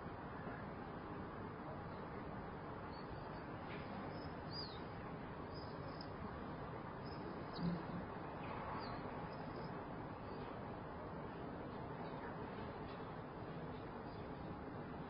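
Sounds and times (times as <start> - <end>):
faint city ambience: 0.0 - 15.0
bird chirps: 2.9 - 6.2, 7.0 - 8.0, 8.7 - 10.5.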